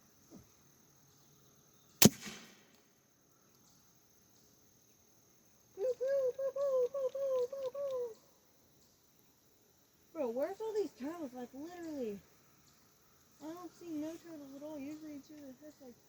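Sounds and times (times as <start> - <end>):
bb gun firing: 2.0 - 2.8.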